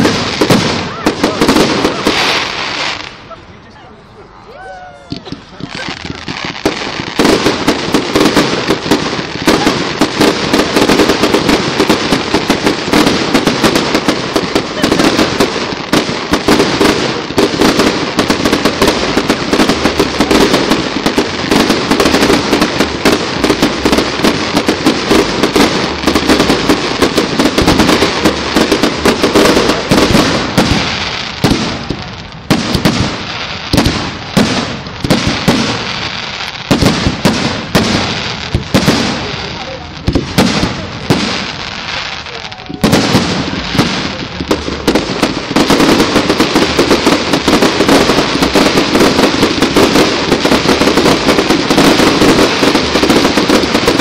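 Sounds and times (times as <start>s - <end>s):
fireworks bangs and crackling: 0.0s - 54.0s.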